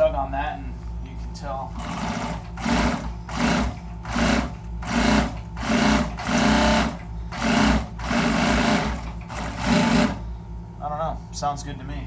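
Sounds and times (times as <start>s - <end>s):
low motor hum: 0.0s - 11.4s
sewing machine sewing in bursts: 1.8s - 10.2s.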